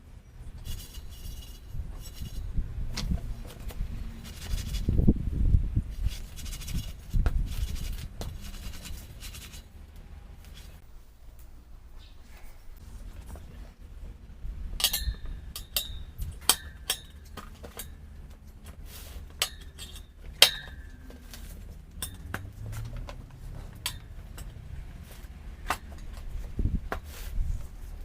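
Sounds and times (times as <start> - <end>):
metal tools clinking: 14.8 - 18.1, 19.3 - 23.0.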